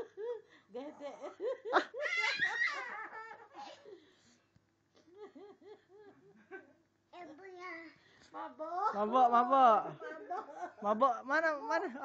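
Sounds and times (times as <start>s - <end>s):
people laughing: 9.9s - 11.0s.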